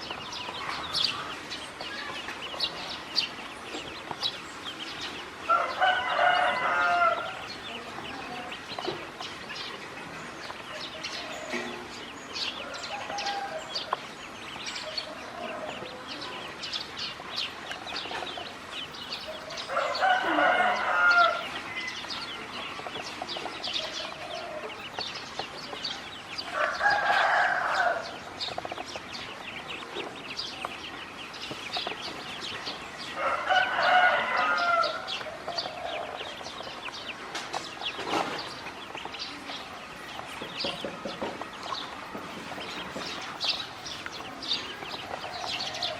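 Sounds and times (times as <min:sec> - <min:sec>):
rooster crowing: 0:05.5 - 0:07.8, 0:12.6 - 0:14.0, 0:19.3 - 0:22.2, 0:26.5 - 0:28.2, 0:33.2 - 0:36.4.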